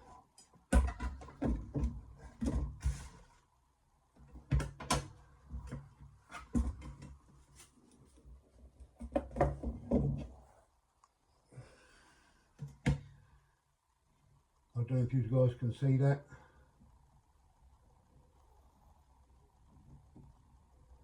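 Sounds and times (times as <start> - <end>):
objects clattering on a workbench: 0.4 - 3.4, 4.2 - 7.8, 8.8 - 10.4.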